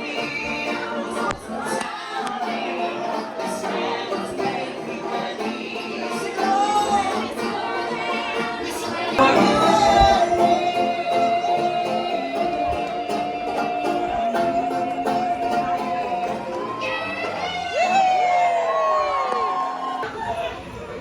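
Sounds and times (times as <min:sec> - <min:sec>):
live music with singing: 0:00.0 - 0:19.8
voice holding long note: 0:09.2 - 0:17.0.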